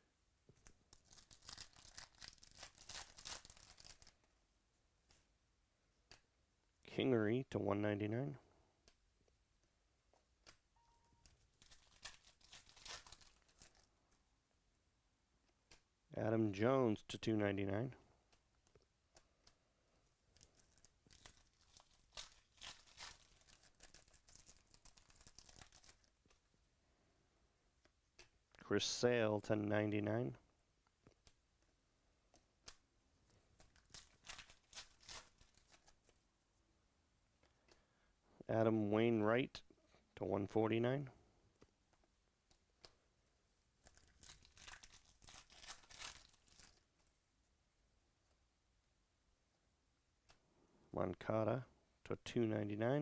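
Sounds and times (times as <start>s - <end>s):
cards and wrappers crinkling: 0.6s - 4.3s, 11.2s - 13.9s, 20.3s - 26.4s, 32.6s - 36.2s, 43.8s - 47.1s.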